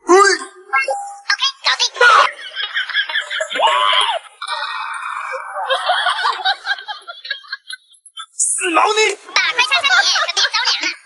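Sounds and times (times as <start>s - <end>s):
person laughing: 3.0s - 8.0s
person crying out: 3.6s - 5.8s.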